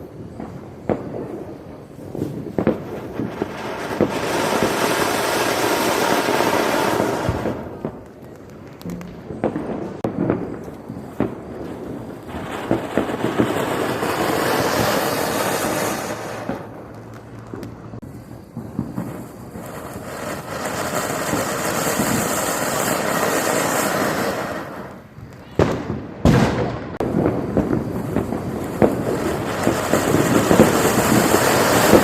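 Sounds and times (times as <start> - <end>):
firework crackles and pops: 0.0 - 32.0
fountain firework hissing: 1.4 - 8.0, 10.9 - 16.8, 18.0 - 25.1, 27.1 - 32.0.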